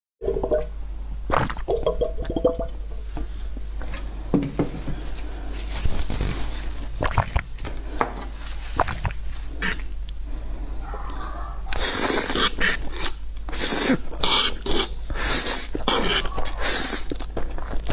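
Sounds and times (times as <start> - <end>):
steady low hum: 0.2 - 17.9.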